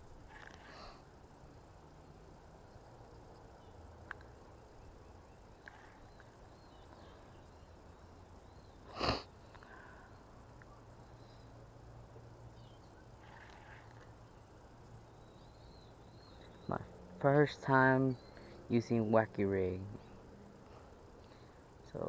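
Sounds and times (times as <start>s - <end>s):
faint high chirps: 0.0s - 11.7s, 12.4s - 22.0s.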